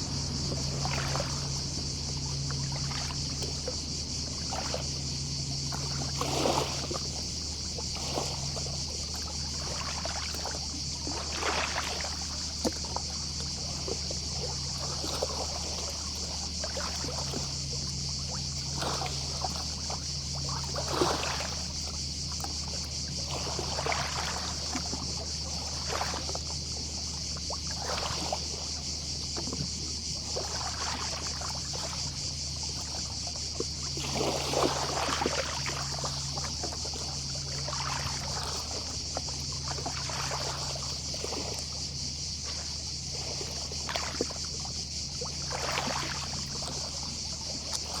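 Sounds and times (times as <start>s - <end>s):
low steady hum: 0.0s - 27.8s
distant cicadas: 0.0s - 48.0s
waves lapping on shore: 0.0s - 48.0s.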